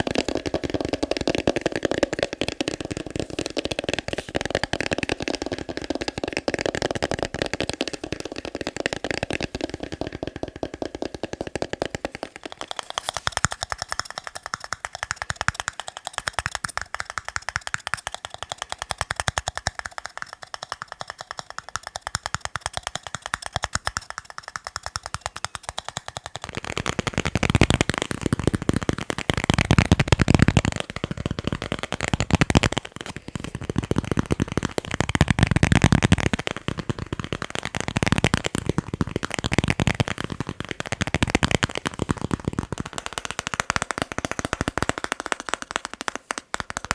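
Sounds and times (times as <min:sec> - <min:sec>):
fast tapping on objects: 0:00.0 - 0:46.9.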